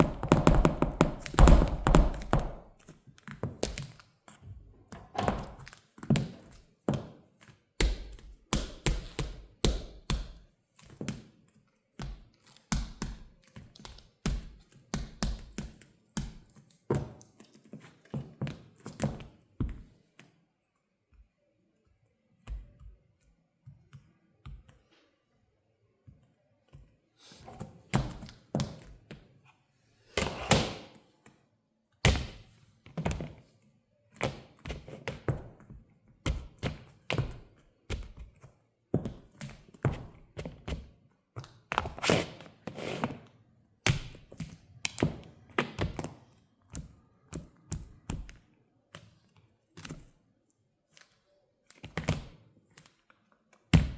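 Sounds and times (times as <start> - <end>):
shoes thudding on hard floor: 0.0 - 3.9, 5.2 - 7.1.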